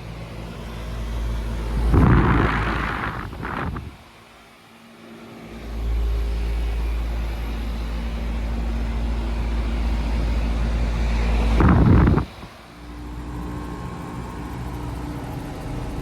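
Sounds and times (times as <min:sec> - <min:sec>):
heat pump humming: 0:00.0 - 0:16.0.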